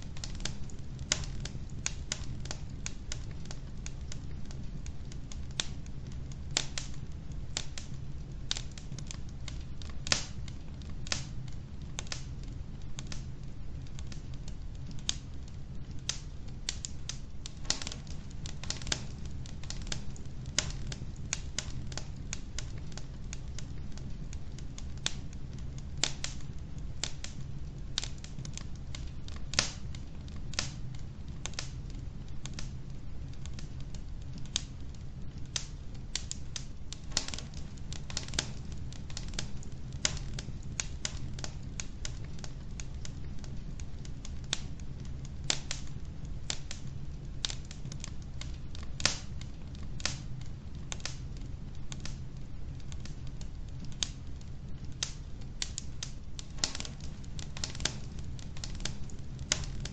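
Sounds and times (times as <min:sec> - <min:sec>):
burning logs crackling and popping: 0:00.0 - 0:59.9
low fire rumble: 0:00.0 - 0:59.9.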